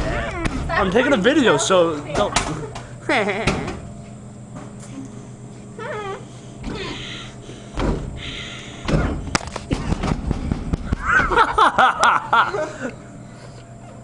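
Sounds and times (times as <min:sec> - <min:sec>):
thuds against vending machine: 0:07.8 - 0:08.1, 0:08.8 - 0:11.4.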